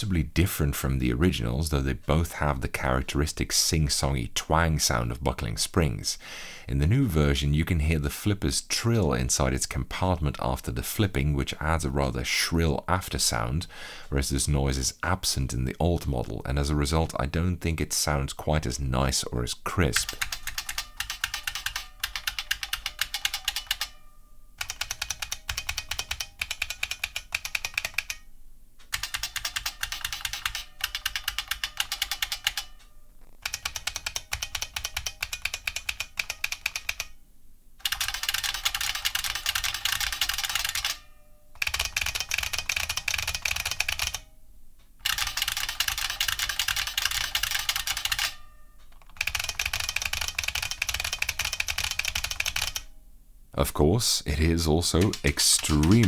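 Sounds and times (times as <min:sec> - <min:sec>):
clicky keyboard typing: 0:19.9 - 0:23.9, 0:24.6 - 0:28.2, 0:28.8 - 0:37.1, 0:37.8 - 0:41.0, 0:45.0 - 0:48.3, 0:48.9 - 0:52.9, 0:54.9 - 0:56.0.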